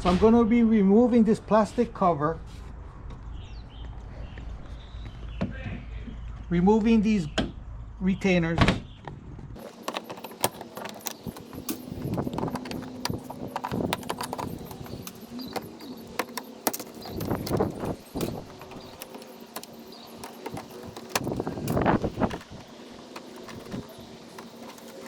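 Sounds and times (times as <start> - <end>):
plastic clips clicking and snapping: 9.6 - 25.0
tool clinks: 9.6 - 25.0.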